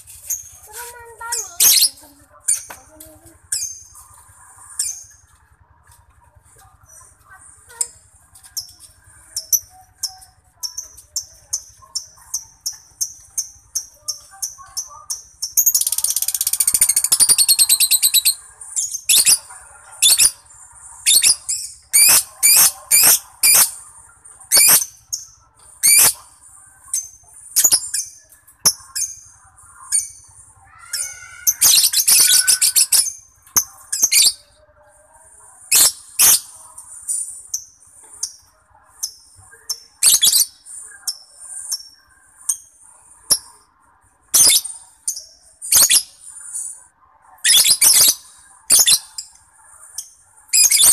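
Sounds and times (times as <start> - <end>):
lovebird chirping: 35.7 - 43.6.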